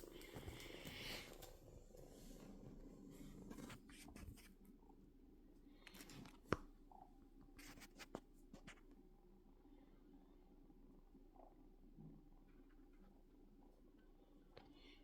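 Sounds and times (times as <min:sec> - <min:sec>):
faint scratching and rustling: 0:00.0 - 0:04.6, 0:07.5 - 0:08.9.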